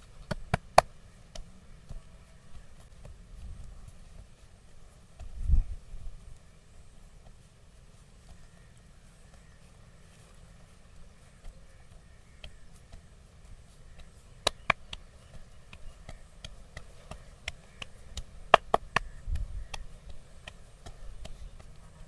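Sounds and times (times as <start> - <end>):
wooden sticks tapping on body: 0.0 - 4.3, 8.2 - 22.0.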